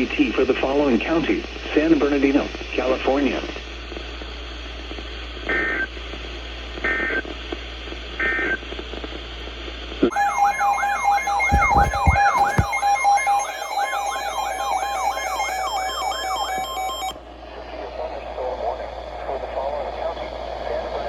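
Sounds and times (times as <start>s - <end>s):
electronic siren-like alarm: 12.5s - 17.2s.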